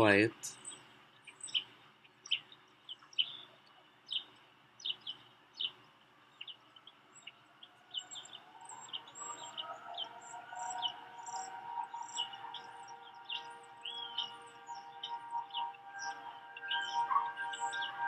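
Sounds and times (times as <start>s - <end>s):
small birds chirping: 0.0s - 18.0s
distant warning siren: 7.4s - 18.0s.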